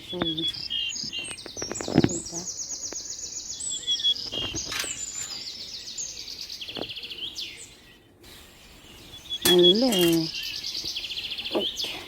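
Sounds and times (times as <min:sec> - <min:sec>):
songbirds chirping: 0:00.0 - 0:12.0.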